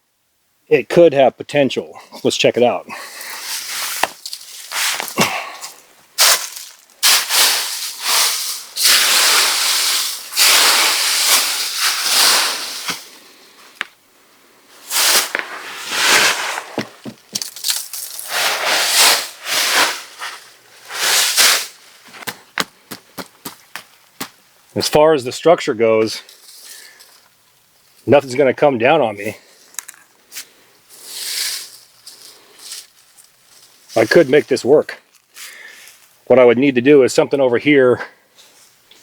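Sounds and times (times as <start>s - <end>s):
footsteps in dry leaves: 3.1s - 13.2s, 14.8s - 24.4s, 30.3s - 34.4s.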